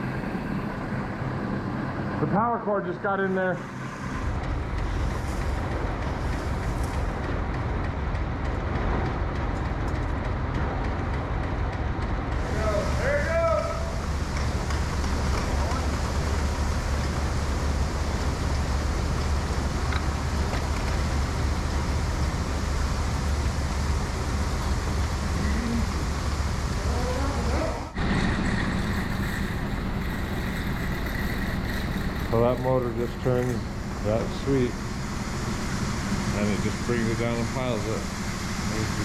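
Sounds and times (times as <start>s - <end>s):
auger rumbling and rattling: 4.0s - 12.8s, 27.4s - 39.0s.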